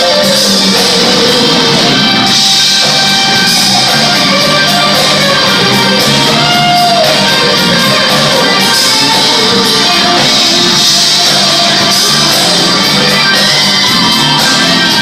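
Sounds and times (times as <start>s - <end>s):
electric guitar: 0.0s - 15.0s
live rock band playing: 0.0s - 15.0s.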